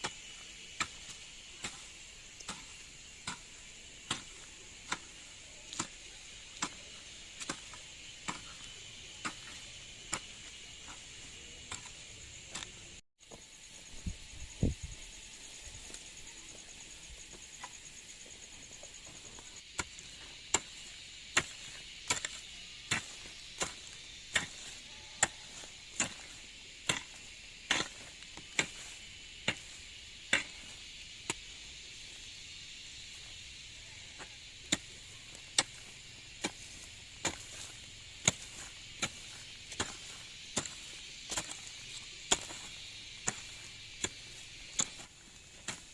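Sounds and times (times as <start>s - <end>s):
hand tool chopping: 0.0s - 12.8s, 19.8s - 31.5s, 34.6s - 45.9s
high insect buzz: 0.0s - 45.9s.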